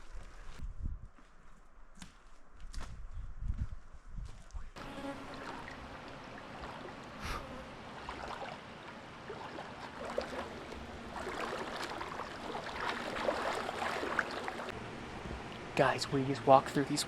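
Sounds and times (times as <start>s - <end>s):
person wading through water: 4.9s - 14.8s.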